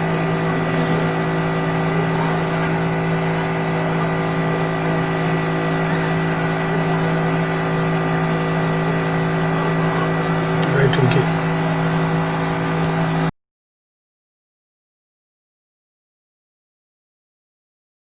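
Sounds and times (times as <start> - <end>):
electrical hum: 0.0 - 12.6.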